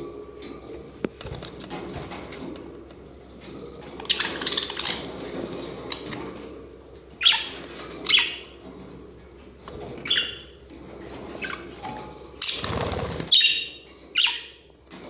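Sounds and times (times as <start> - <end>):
parrots chirping: 4.0 - 6.4, 7.2 - 8.6, 10.0 - 10.6, 11.2 - 11.8, 12.4 - 14.7.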